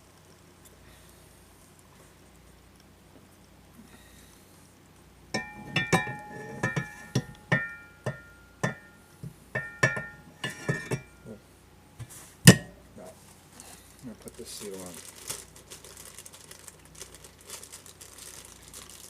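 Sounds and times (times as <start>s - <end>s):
metal tapping on metal shaft: 5.3s - 11.4s.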